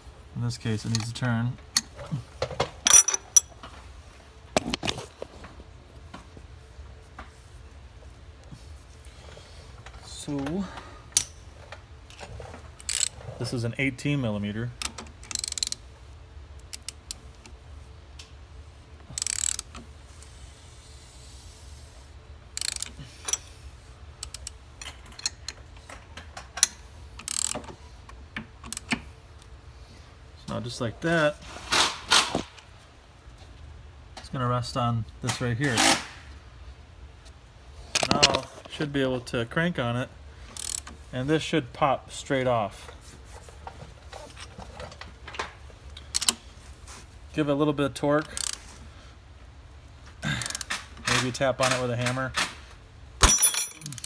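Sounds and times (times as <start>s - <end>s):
wrench clinking on metal: 2.8s - 3.5s, 11.1s - 11.5s, 46.0s - 46.4s, 53.2s - 54.0s
ratchet wrench clicking: 12.8s - 13.1s, 15.2s - 15.8s, 19.1s - 19.8s, 22.6s - 23.4s, 24.2s - 24.6s, 26.6s - 27.6s, 40.6s - 40.9s, 48.2s - 48.6s, 50.4s - 50.8s
ratchet rasp: 19.1s - 19.7s, 22.6s - 23.4s.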